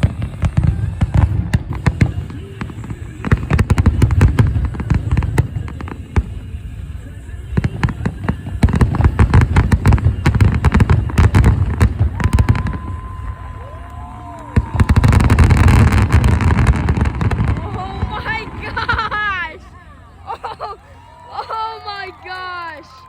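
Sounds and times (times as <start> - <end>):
firework deep booms: 0.0 - 13.5, 14.5 - 19.1
firework crackling pops: 0.0 - 19.3.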